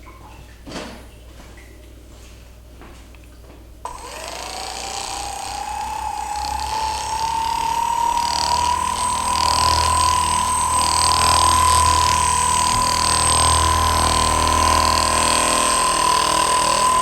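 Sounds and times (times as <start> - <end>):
small electric motor whining: 3.9 - 17.0.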